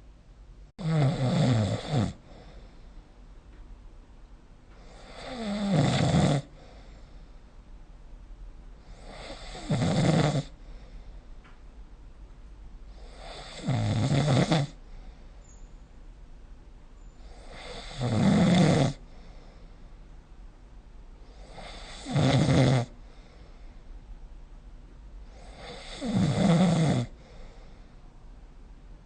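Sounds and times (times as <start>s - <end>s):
person snoring: 0.8s - 2.2s, 4.9s - 6.5s, 8.9s - 10.6s, 13.0s - 14.8s, 17.3s - 19.0s, 21.4s - 23.0s, 25.4s - 27.2s.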